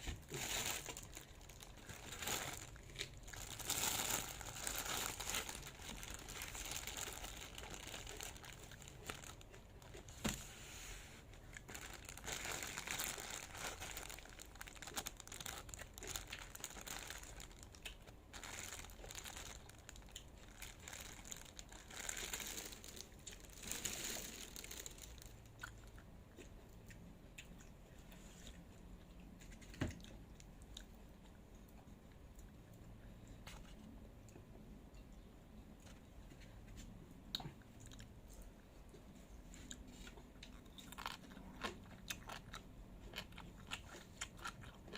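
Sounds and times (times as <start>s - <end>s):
crinkling and rustling: 0.0s - 25.5s, 29.4s - 30.2s.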